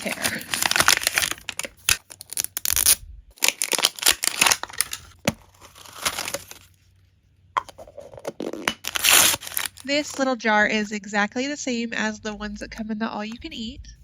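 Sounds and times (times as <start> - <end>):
plastic packaging being torn: 0.0 - 6.7, 8.7 - 9.9.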